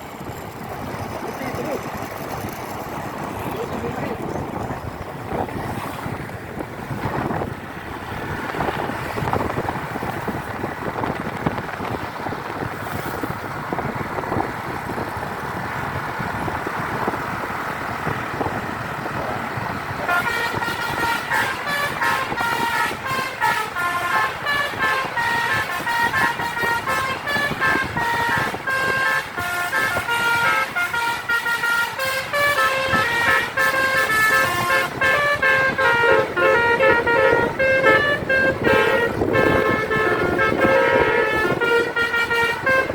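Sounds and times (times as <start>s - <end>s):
bus road and wind noise: 0.0s - 42.9s
musical horn playing tune: 20.1s - 42.9s.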